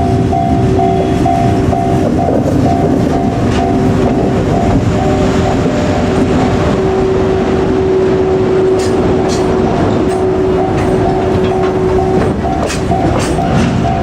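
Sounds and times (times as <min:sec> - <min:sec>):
train wheels clattering on rails: 0:00.0 - 0:07.7, 0:08.4 - 0:14.0
level crossing warning bell: 0:00.0 - 0:14.0.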